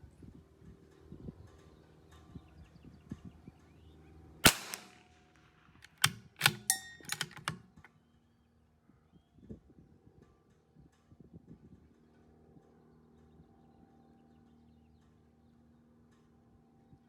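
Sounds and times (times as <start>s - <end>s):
rifle shot: 4.4s - 7.7s
rifle bolt metallic clicks: 4.5s - 5.1s, 5.8s - 7.9s.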